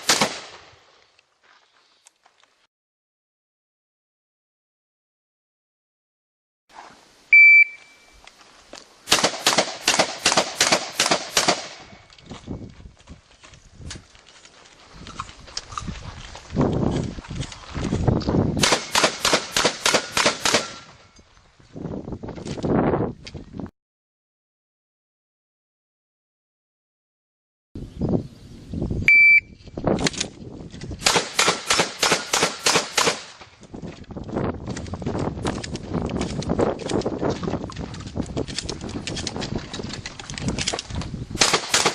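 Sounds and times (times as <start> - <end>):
shotgun shots: 0.0 - 0.8, 9.1 - 12.0, 18.6 - 21.0, 31.0 - 33.5, 41.4 - 41.9
shot timer beep: 7.3 - 8.1, 29.1 - 29.6.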